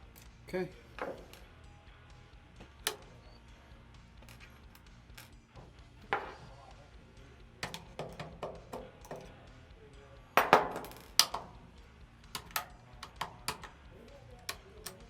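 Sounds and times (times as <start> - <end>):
metallic clicks and knocks of rifle parts: 1.0 - 1.5, 2.6 - 3.4, 4.2 - 6.5, 7.6 - 9.4, 10.4 - 15.0.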